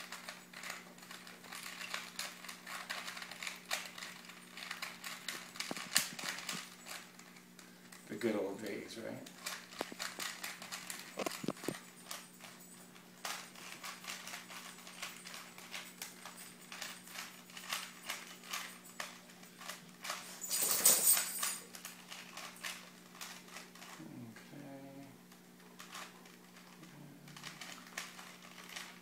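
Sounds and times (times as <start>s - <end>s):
faint steady hum: 0.0s - 29.0s
puzzle cube plastic clicks: 9.4s - 12.2s, 25.8s - 29.0s.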